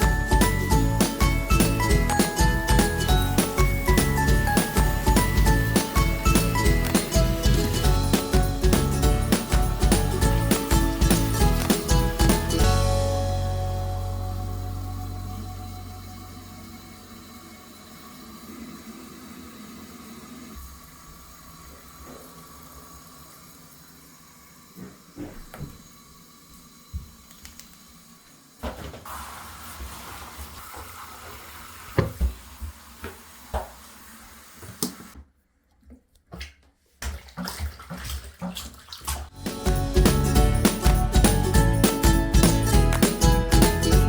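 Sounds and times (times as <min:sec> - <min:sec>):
tap water running into sink: 0:00.0 - 0:12.8, 0:28.6 - 0:35.2
water splashing: 0:01.1 - 0:12.9, 0:36.3 - 0:44.0.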